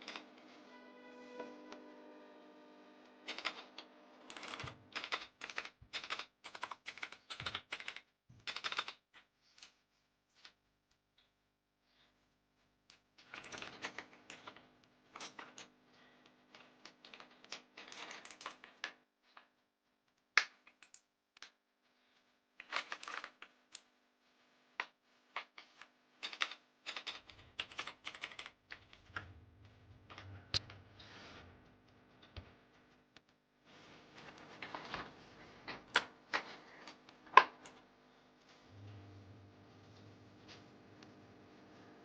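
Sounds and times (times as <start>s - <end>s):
keyboard clicks and taps: 3.3s - 3.6s, 4.3s - 9.0s
faint low hum: 38.1s - 42.0s.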